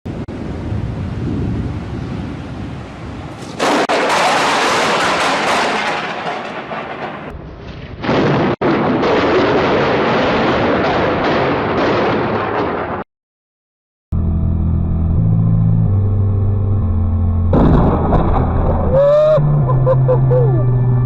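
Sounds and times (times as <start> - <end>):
thunder crack and rumble: 0.2 - 2.8, 3.4 - 13.0, 17.5 - 19.6.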